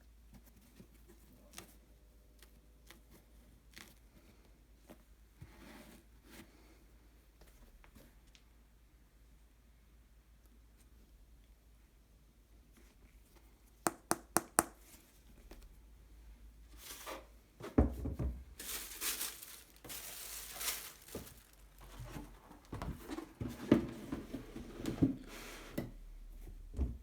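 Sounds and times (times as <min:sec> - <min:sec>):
box and shoes knocking: 0:17.7 - 0:18.5
paper rustling and crinkling: 0:18.5 - 0:23.9.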